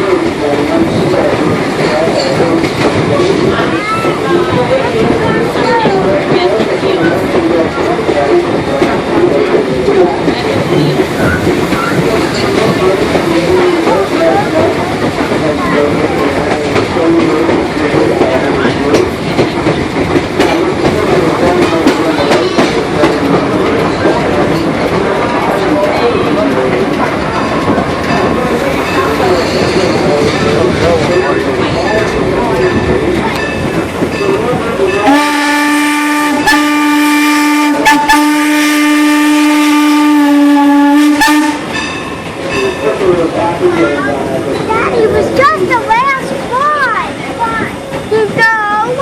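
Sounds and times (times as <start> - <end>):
train wheels clickety-clack: 0.0 - 49.0
steam locomotive whistle: 35.0 - 41.7.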